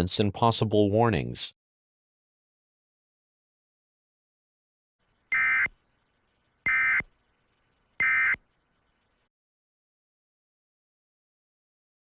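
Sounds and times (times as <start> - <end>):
warbling digital data tones: 5.2 - 9.3.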